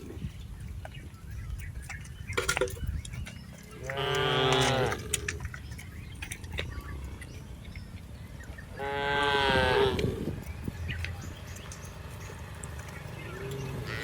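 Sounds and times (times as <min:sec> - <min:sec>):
cow mooing: 0:03.8 - 0:05.3, 0:08.7 - 0:10.4, 0:13.4 - 0:14.0.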